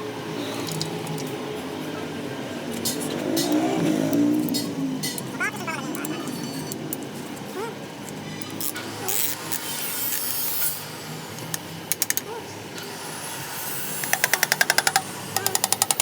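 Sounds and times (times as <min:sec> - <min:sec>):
ratchet wrench clicking: 0:13.9 - 0:16.0.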